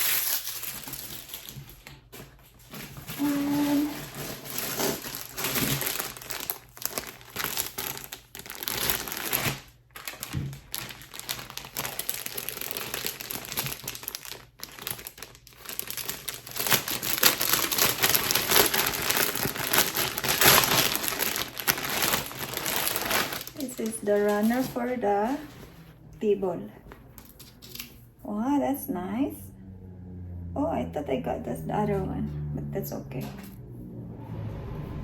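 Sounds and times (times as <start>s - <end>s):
packaging crinkling and rustling: 0.0s - 26.1s, 26.8s - 28.1s.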